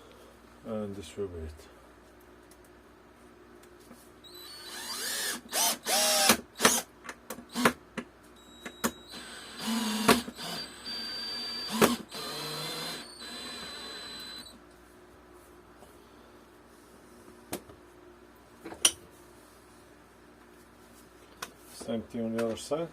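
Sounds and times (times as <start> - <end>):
power drill driving screws: 4.3 - 6.9, 7.5 - 7.8, 8.9 - 14.6.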